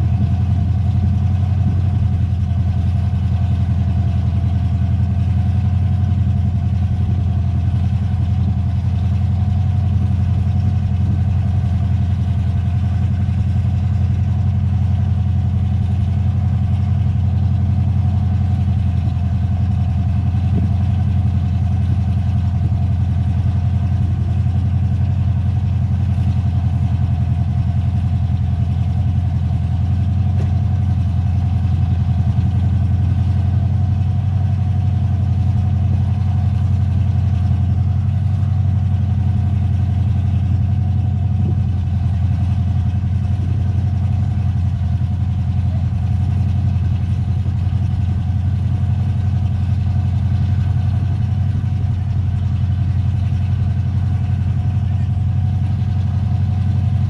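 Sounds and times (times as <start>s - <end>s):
engine idling: 0.0s - 57.0s.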